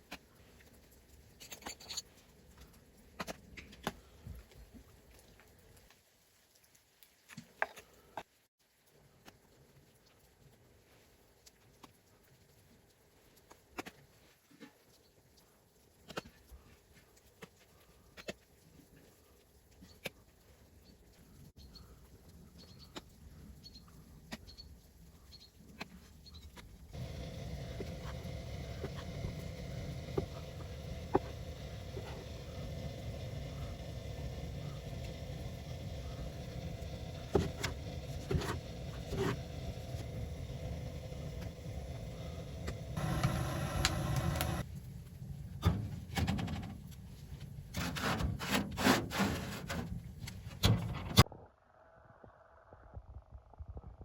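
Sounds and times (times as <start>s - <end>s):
fire popping: 26.9s - 45.6s
wood fire crackling: 26.9s - 46.0s
low rumble with hiss: 27.0s - 46.2s.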